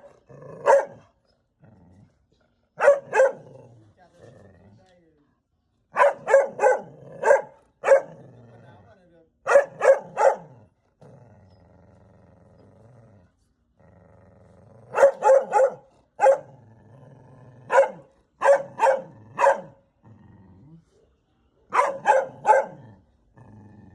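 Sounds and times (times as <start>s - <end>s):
dog barking angrily: 0.0s - 1.1s, 2.8s - 3.7s, 5.9s - 8.4s, 9.5s - 10.7s, 14.9s - 16.6s, 17.6s - 19.8s, 21.7s - 23.0s
dog growling: 0.0s - 5.0s, 6.5s - 9.0s, 10.0s - 20.9s, 21.8s - 23.9s.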